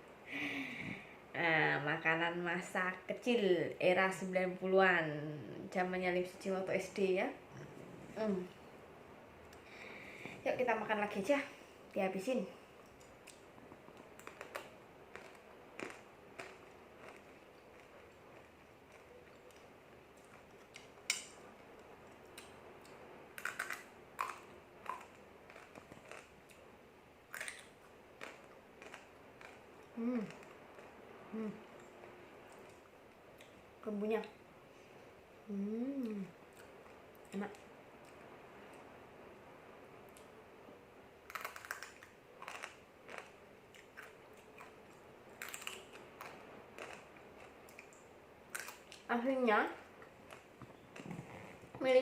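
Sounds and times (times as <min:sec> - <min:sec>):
crunching of fried noodle sticks: 0:13.0 - 0:21.3, 0:23.4 - 0:26.6, 0:27.3 - 0:31.0, 0:41.3 - 0:49.1.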